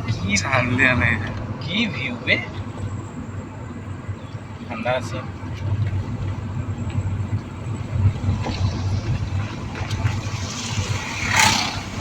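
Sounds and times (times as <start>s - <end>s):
car engine and road rumble: 0.0s - 12.0s
hissing whoosh: 8.0s - 12.0s.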